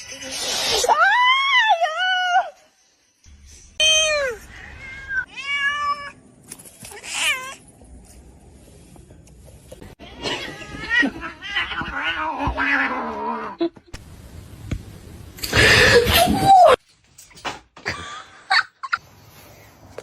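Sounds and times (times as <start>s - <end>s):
cat meowing: 3.8s - 6.2s.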